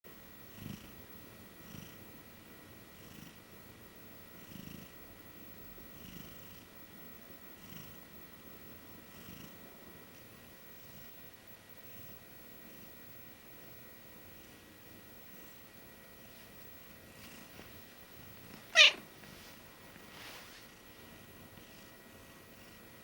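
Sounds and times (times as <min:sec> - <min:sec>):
cat snoring softly: 0:00.5 - 0:01.0, 0:01.6 - 0:02.1, 0:02.9 - 0:03.4, 0:04.4 - 0:05.0, 0:05.8 - 0:06.7, 0:07.5 - 0:08.1, 0:08.9 - 0:11.1, 0:21.0 - 0:23.0.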